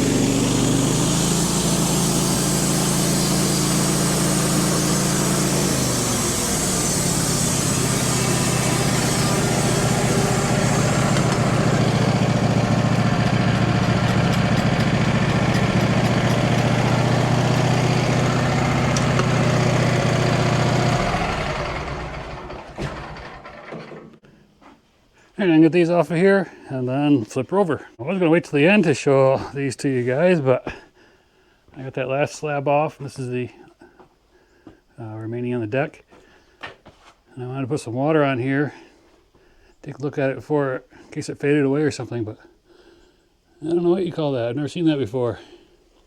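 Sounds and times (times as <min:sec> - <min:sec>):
blade sawing through log: 0:00.0 - 0:21.9
sawmill engine running: 0:00.0 - 0:24.2.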